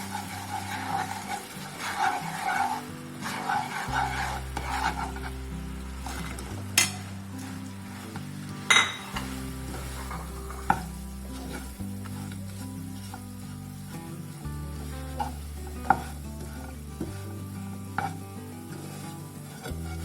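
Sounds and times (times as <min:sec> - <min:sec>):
food sizzling in a frying pan: 0:00.0 - 0:20.0
spatula stirring: 0:00.0 - 0:20.0
utensil clinking against pan: 0:06.8 - 0:07.1, 0:08.7 - 0:09.4.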